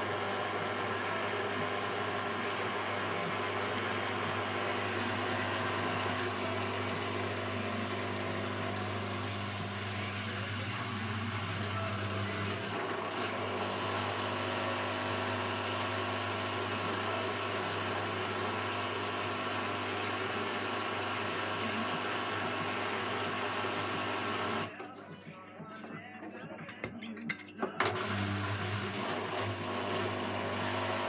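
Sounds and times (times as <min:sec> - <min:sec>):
washing machine humming: 0:00.0 - 0:24.8, 0:25.8 - 0:31.0.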